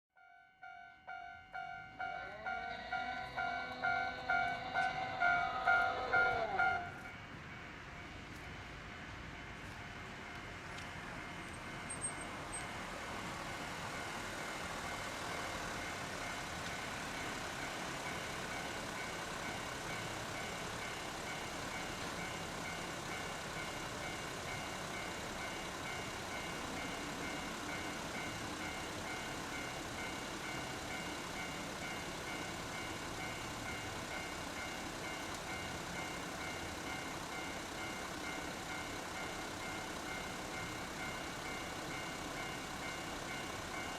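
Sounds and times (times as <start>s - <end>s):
level crossing alarm ringing: 0.2s - 7.1s.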